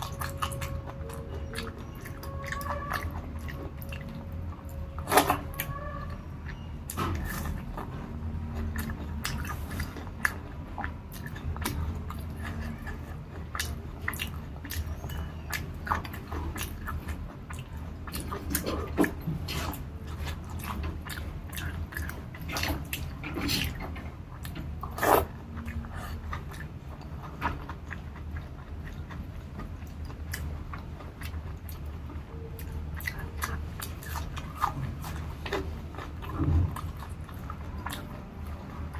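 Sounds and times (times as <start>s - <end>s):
chewing and biting food: 0.0s - 38.9s
steady low hum: 0.0s - 38.9s.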